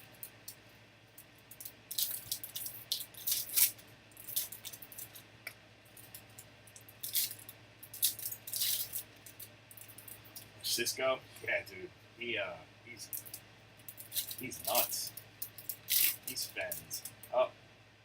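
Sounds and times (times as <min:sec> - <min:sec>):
wrappers crinkling: 0:01.5 - 0:05.2, 0:05.9 - 0:10.5, 0:13.0 - 0:17.2.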